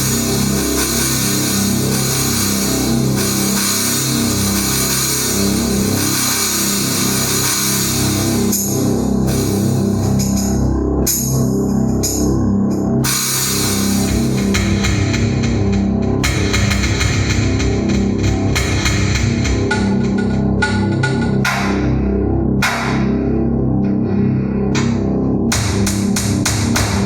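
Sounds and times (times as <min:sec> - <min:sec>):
cymbals: 0:00.0 - 0:12.3, 0:13.0 - 0:22.0
electronic keyboard rock rhythm: 0:00.0 - 0:27.0.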